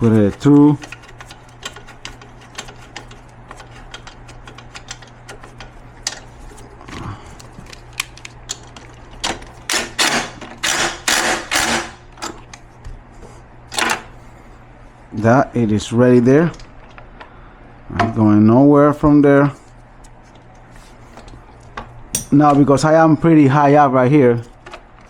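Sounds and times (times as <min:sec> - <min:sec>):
rasping tool strokes: 0:00.0 - 0:04.0.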